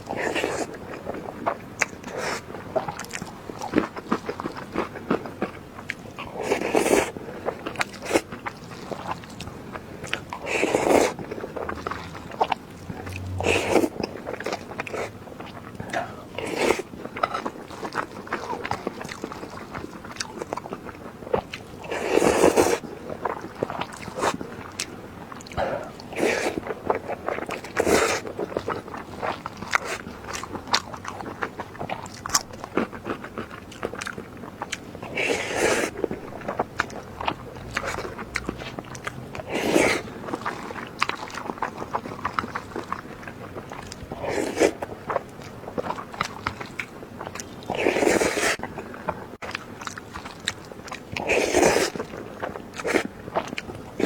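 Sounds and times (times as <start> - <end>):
wet chewing and lip smacking: 0.0 - 54.0
loud mouth sound: 12.9 - 14.0.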